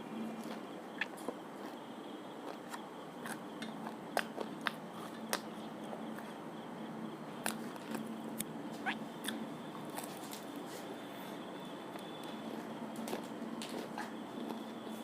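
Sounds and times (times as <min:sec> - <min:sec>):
steady low hum: 0:00.0 - 0:15.0
food being chewed: 0:00.2 - 0:06.4, 0:07.4 - 0:15.0
sharp clicks and smacks: 0:02.4 - 0:05.5, 0:07.4 - 0:08.5.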